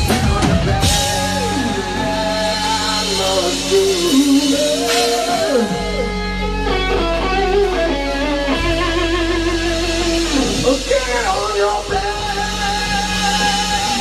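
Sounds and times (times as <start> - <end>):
electric guitar bending notes: 0.0 - 14.0
live rock band: 0.0 - 14.0
steady bass: 0.0 - 14.0.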